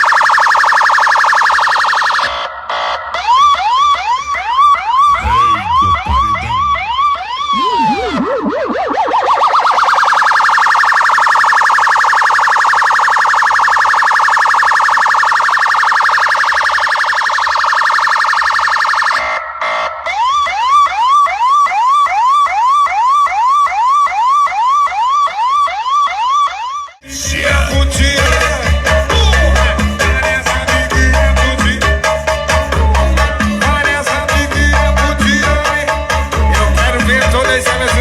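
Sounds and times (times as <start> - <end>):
electronic siren wailing: 0.0 - 27.0
heavy bass music: 4.9 - 8.8, 27.0 - 38.0.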